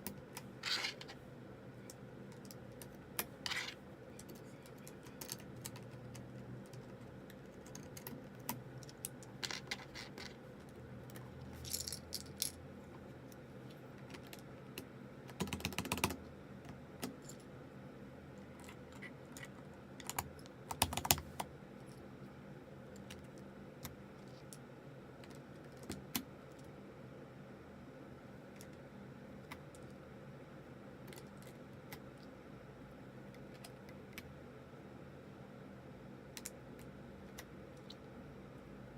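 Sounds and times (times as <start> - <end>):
keyboard keycaps clicking: 4.2 - 12.5, 14.0 - 16.2, 19.4 - 21.5.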